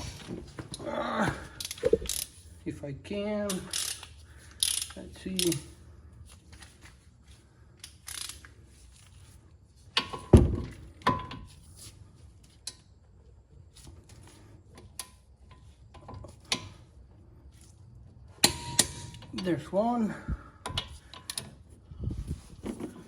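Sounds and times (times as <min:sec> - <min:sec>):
sharp ringing metal clanks: 0:18.4 - 0:19.5
metal tools clanking and tapping: 0:18.4 - 0:19.6.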